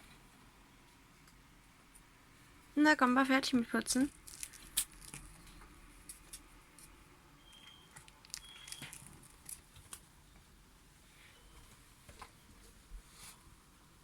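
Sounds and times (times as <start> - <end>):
rat peeping: 7.4 - 9.0.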